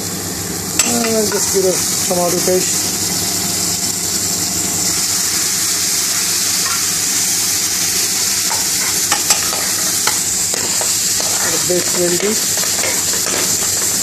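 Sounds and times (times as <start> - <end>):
food sizzling in oil: 0.0 - 14.0
utensil clicking against pan: 8.5 - 14.0.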